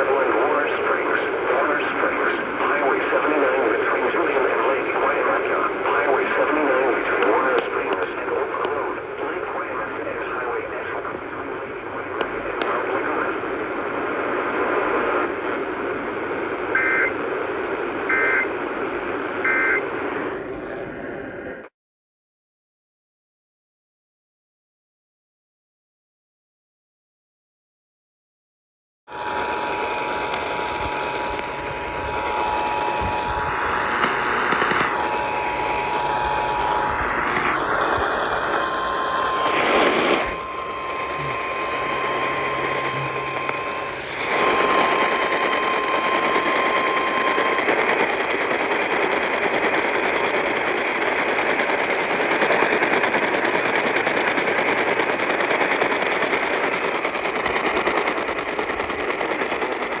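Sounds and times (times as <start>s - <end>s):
radio static hiss: 0.0s - 21.6s, 29.1s - 60.0s
two-tone attention signal: 16.8s - 17.1s, 18.1s - 18.5s, 19.4s - 19.8s, 40.2s - 47.6s
single-tone warning alarm: 16.8s - 17.2s, 18.1s - 18.5s, 19.4s - 19.8s, 37.7s - 48.8s.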